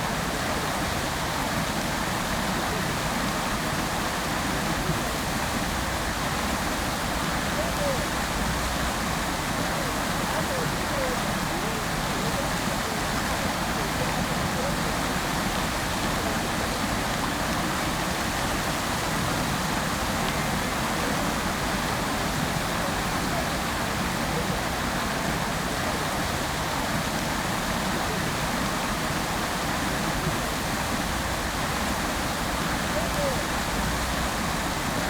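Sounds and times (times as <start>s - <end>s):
fountain water splashing: 0.0s - 35.0s.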